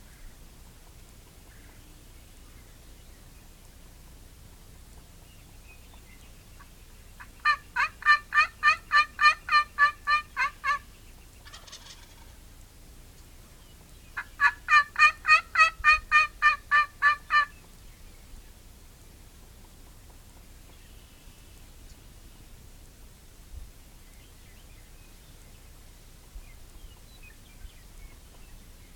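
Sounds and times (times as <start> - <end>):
wild turkey calling: 5.2 - 12.5, 14.1 - 17.8.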